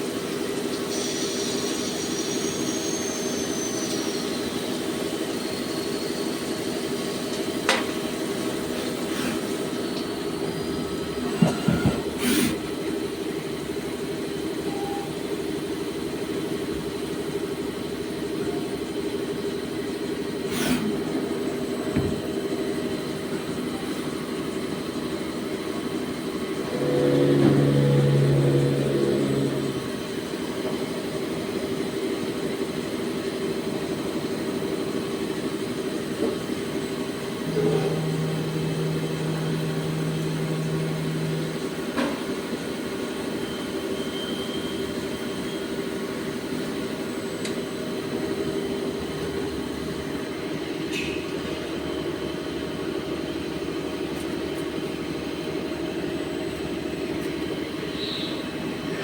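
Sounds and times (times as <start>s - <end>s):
turning machine humming: 17.6s - 50.8s
deeper machine tone: 21.2s - 32.4s, 34.9s - 54.0s.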